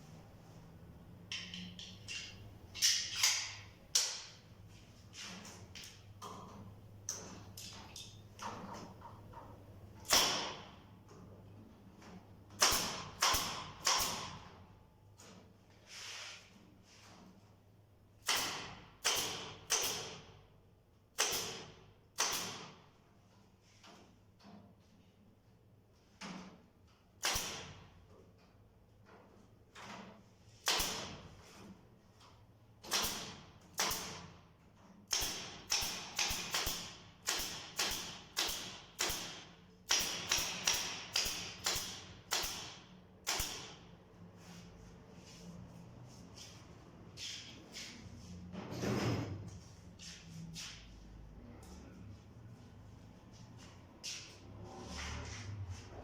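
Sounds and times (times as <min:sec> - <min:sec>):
hammer driving nails into wood: 0:10.0 - 0:10.8, 0:12.6 - 0:14.6, 0:18.2 - 0:20.4, 0:21.1 - 0:22.8, 0:27.2 - 0:27.9, 0:30.6 - 0:31.3, 0:32.8 - 0:34.3, 0:35.1 - 0:43.9.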